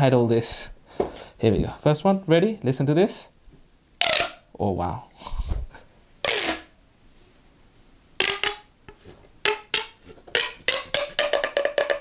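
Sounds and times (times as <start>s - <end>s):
plastic fidget toy popping: 8.2s - 12.0s.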